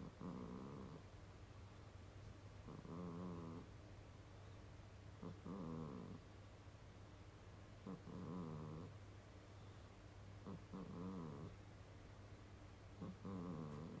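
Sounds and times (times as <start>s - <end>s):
cat snoring: 0.0s - 1.0s, 2.7s - 3.7s, 5.2s - 6.2s, 7.8s - 9.0s, 10.4s - 11.6s, 13.0s - 14.0s.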